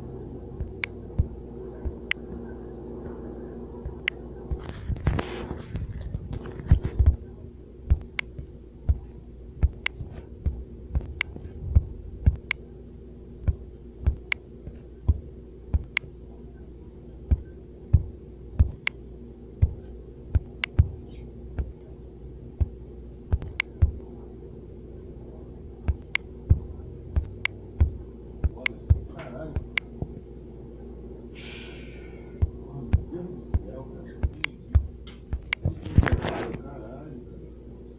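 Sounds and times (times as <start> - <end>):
steady low hum: 0.0 - 37.9
sharp taps: 0.6 - 2.3, 7.9 - 12.6, 13.4 - 16.1, 17.3 - 19.0, 19.6 - 21.0, 21.6 - 21.8, 22.6 - 24.0, 25.8 - 30.2, 32.4 - 35.8.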